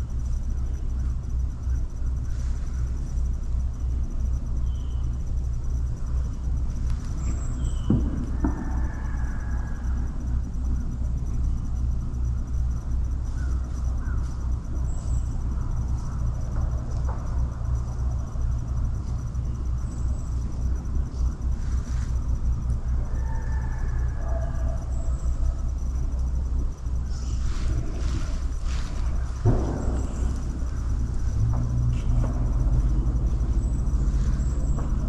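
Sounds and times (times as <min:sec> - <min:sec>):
low rumble: 0:24.9 - 0:35.0.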